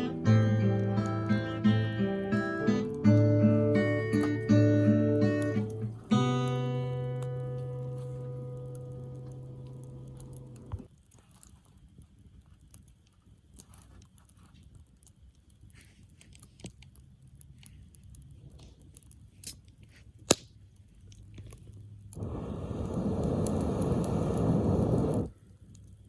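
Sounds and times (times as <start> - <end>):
campfire crackling: 0.0 - 26.0
sharp wood snaps: 16.2 - 21.8
loud even rushing noise: 22.2 - 25.3.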